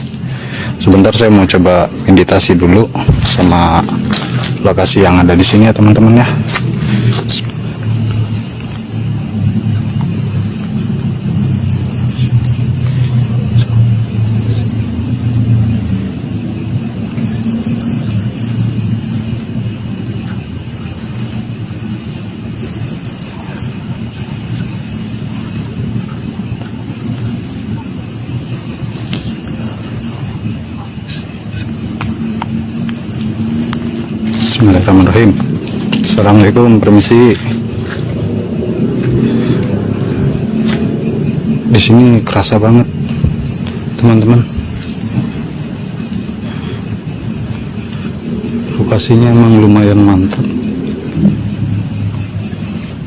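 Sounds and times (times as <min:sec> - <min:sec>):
crickets chirping: 0:00.0 - 0:53.0
high insect whine: 0:00.0 - 0:53.0
low rumble: 0:31.8 - 0:52.7.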